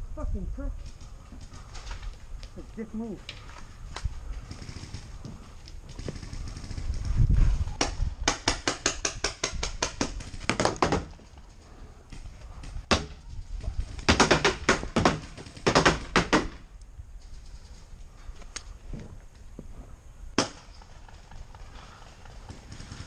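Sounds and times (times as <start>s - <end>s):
paintball markers firing: 7.8s - 11.2s.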